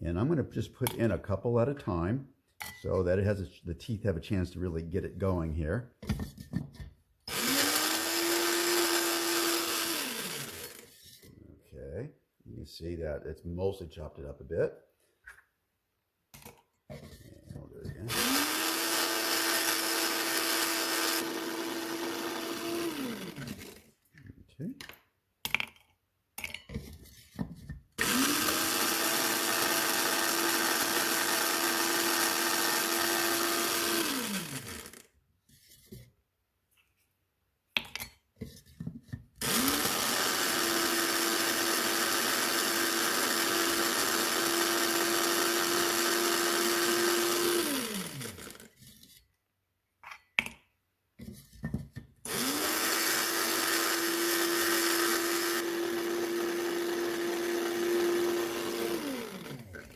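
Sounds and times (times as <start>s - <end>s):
coffee grinder whining: 7.3s - 11.2s, 18.0s - 23.9s, 28.0s - 35.1s, 39.4s - 49.1s, 52.3s - 59.9s.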